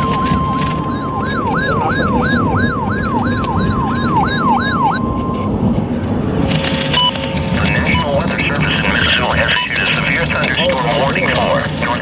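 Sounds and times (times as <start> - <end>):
steady alert tone: 0.0 - 6.0
siren-like wail: 0.0 - 8.4.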